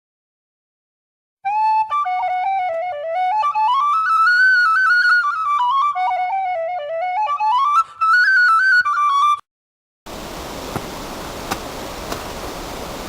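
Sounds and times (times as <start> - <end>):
solo flute melody: 1.4 - 9.4
steady outdoor rushing noise: 10.1 - 13.0.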